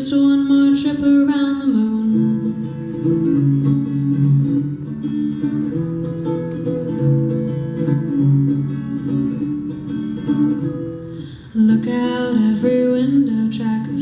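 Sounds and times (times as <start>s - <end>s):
acoustic guitar strumming: 0.0s - 14.0s
person singing: 11.4s - 14.0s.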